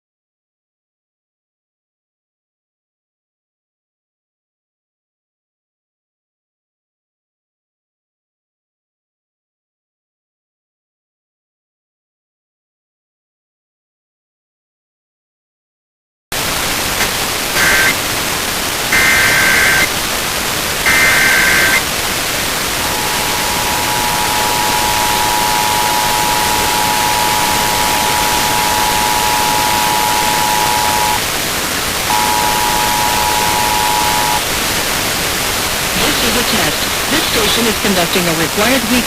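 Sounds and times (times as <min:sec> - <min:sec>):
radio static: 0:16.4 - 0:39.0
steady two-tone attention signal: 0:17.0 - 0:18.0, 0:18.9 - 0:19.9, 0:20.9 - 0:21.9, 0:22.7 - 0:31.3, 0:32.1 - 0:34.5
warbling digital squawk bursts: 0:17.0 - 0:18.0, 0:19.0 - 0:19.9, 0:20.9 - 0:21.8.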